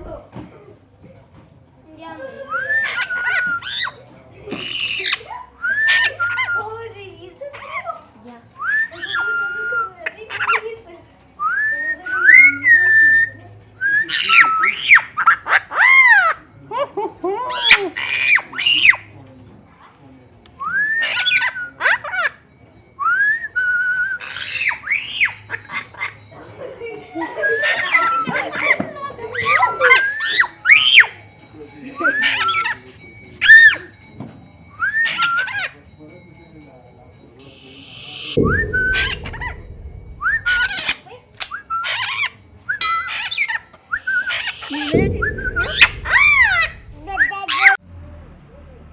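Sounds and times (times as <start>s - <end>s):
parrot whistling: 37.5s - 42.2s, 42.8s - 47.8s.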